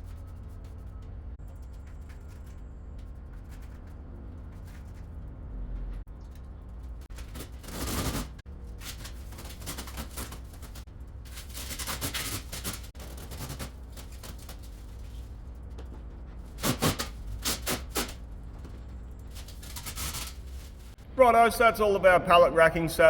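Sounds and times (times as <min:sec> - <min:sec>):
workshop clatter and knocks: 0:04.0 - 0:21.0
steady low hum: 0:08.4 - 0:23.0.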